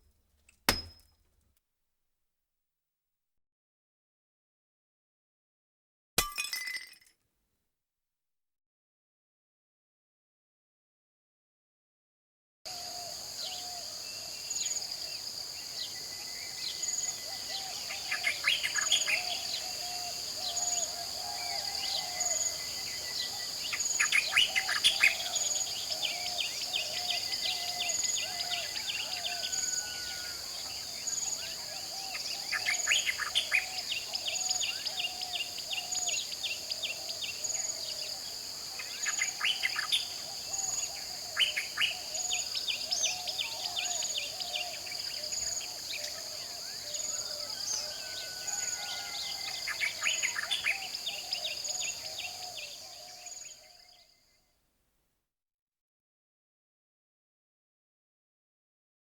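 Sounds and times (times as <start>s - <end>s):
high insect drone: 12.7s - 53.5s.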